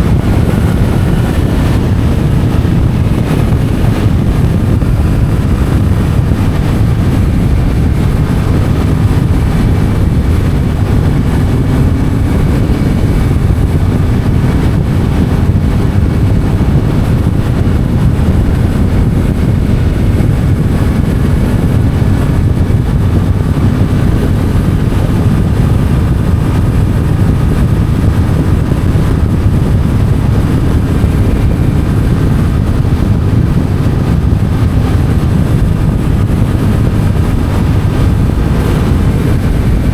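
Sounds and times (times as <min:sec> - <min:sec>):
motorcycle engine rumbling: 0:00.0 - 0:39.9.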